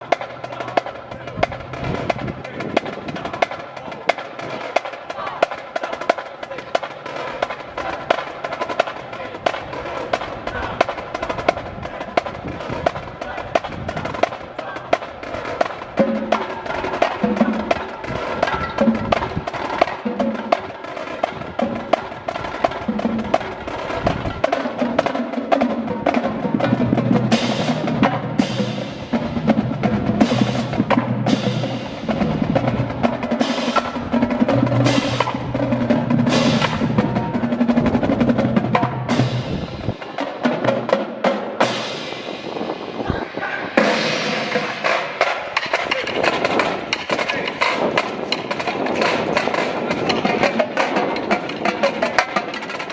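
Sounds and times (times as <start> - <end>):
drumline playing percussion piece: 0.0 - 52.9
bass drum notes: 25.8 - 46.6.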